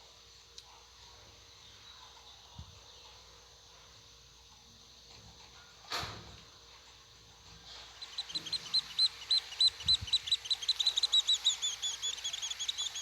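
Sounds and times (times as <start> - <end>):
bird chirping: 7.6 - 13.0.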